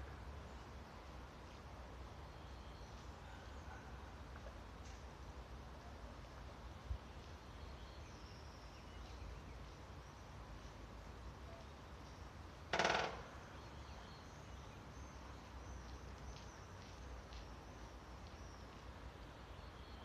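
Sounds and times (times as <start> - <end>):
woodpecker drumming: 12.7 - 13.4.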